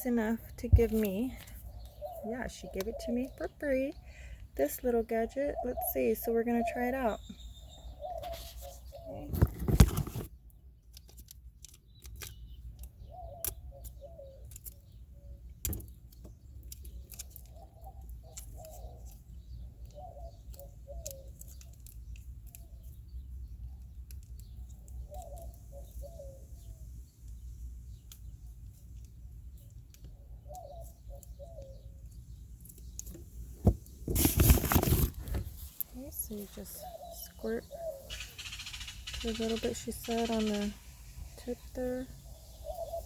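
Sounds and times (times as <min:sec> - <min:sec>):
bird calling: 0:00.0 - 0:10.2, 0:12.1 - 0:15.9, 0:16.7 - 0:21.8, 0:24.4 - 0:26.8, 0:30.0 - 0:32.2, 0:32.8 - 0:43.0
hands handling plastic tube: 0:32.6 - 0:36.5.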